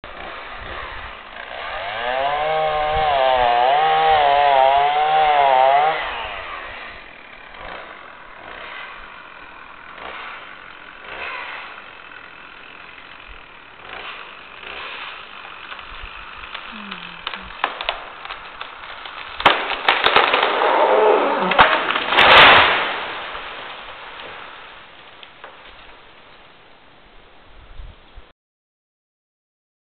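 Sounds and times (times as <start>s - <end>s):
chainsaw cutting: 0.0s - 26.0s
tree crashing through branches: 0.1s - 26.6s
wood cracking: 0.1s - 26.7s.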